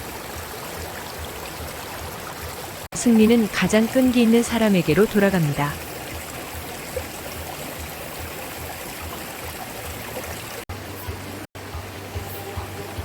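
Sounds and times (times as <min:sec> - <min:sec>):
stream flowing over rocks: 0:00.0 - 0:13.0.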